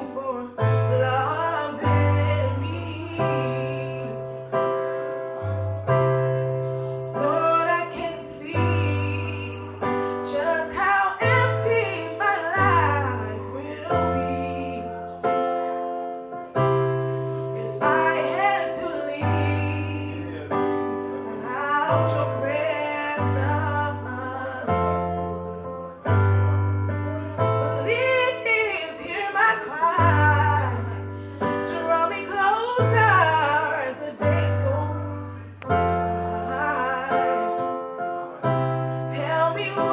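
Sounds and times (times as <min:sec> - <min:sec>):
woman singing: 0:00.0 - 0:04.6, 0:07.2 - 0:15.4, 0:17.6 - 0:25.4, 0:27.4 - 0:37.8, 0:39.0 - 0:39.9
keyboard accompaniment: 0:00.0 - 0:39.9.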